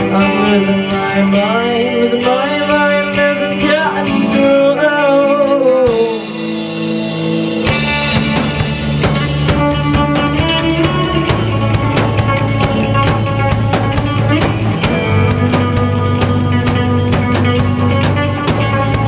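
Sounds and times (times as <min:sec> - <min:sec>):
person singing: 0:00.0 - 0:06.7
rock band playing: 0:00.0 - 0:19.0
cymbal crash: 0:06.2 - 0:09.6.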